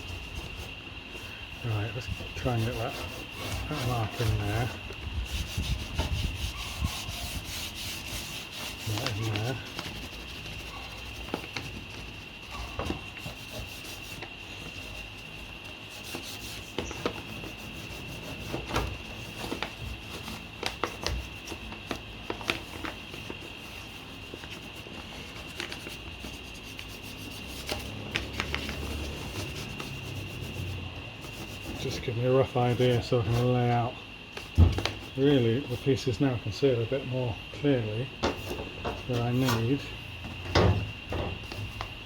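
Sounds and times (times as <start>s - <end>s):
pencil rubbing on paper: 0.0s - 21.6s, 22.5s - 33.7s
steady high-pitched whine: 0.0s - 42.0s.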